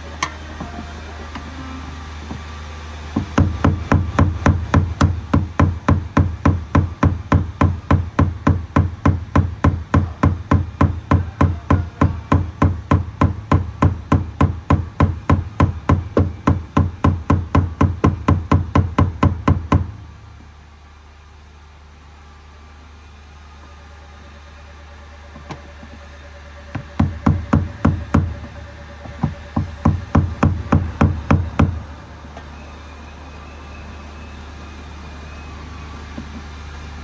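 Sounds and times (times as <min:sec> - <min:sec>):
steady low hum: 0:00.0 - 0:37.0
rhythmic knocking: 0:03.2 - 0:20.0, 0:26.7 - 0:31.8.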